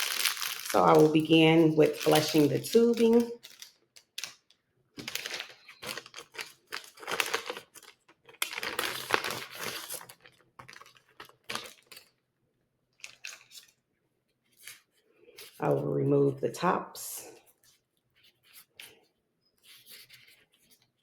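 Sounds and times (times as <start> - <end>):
plastic packaging crinkling and tearing: 0.0 - 12.2, 13.0 - 13.8.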